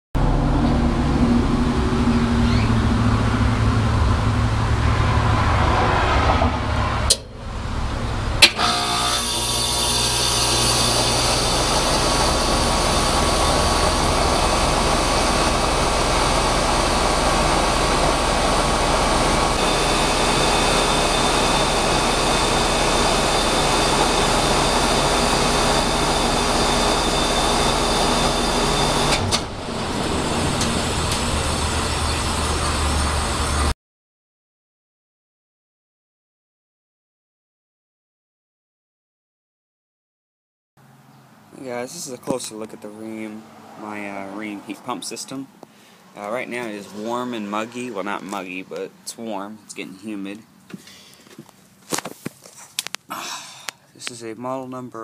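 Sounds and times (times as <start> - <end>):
outdoor fan air noise: 0.2 - 33.7, 40.8 - 54.8
heat pump compressor hum: 7.0 - 33.7.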